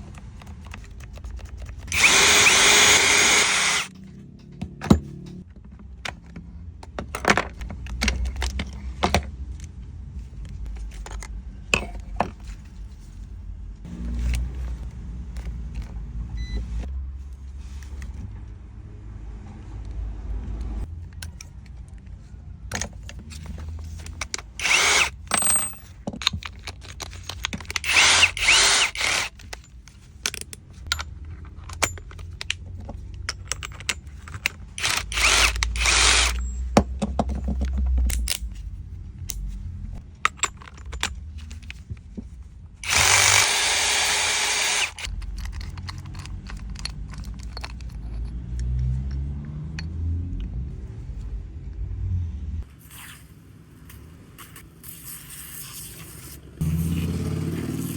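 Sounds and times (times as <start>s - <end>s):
small power-tool motor running: 1.9s - 3.9s, 24.6s - 25.1s, 27.8s - 29.3s, 34.8s - 36.4s, 42.8s - 45.1s.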